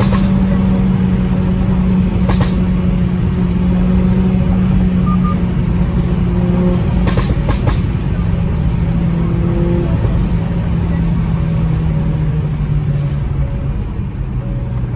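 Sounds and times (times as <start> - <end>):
car engine droning: 0.0 - 14.9.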